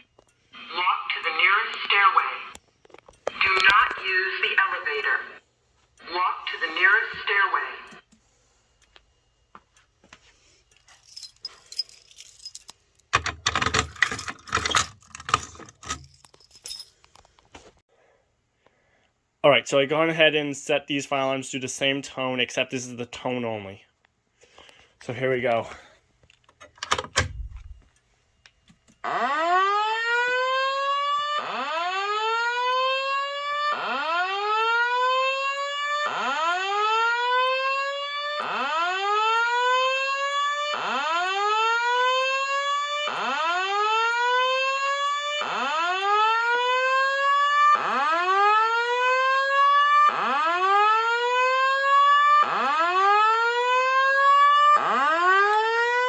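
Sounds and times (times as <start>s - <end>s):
fire alarm rising sweep tone: 29.0s - 56.0s.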